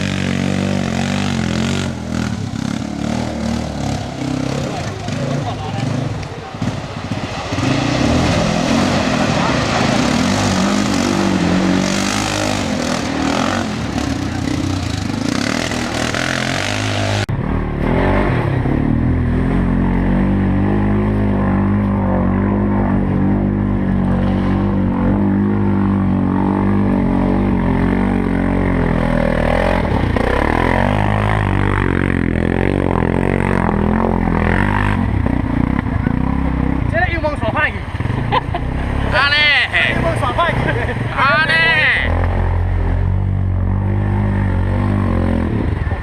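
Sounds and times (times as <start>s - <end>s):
loud rushing noise: 0.0s - 18.7s
atv engine running: 0.0s - 46.0s.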